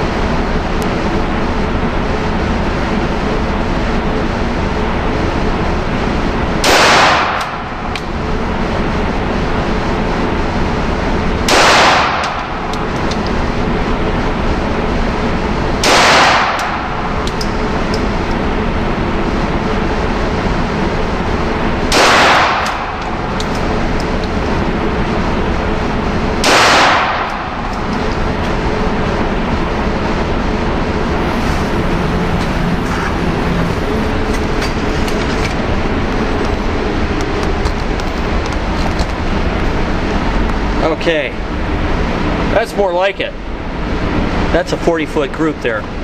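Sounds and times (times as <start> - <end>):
pistol shot: 6.6 - 7.6, 11.4 - 12.5, 15.8 - 16.9, 21.9 - 23.0, 26.4 - 27.6.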